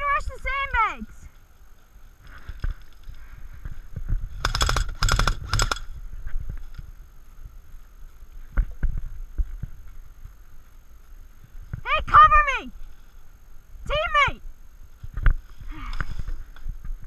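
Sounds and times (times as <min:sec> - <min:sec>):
airsoft gun firing bursts: 0:04.4 - 0:05.9.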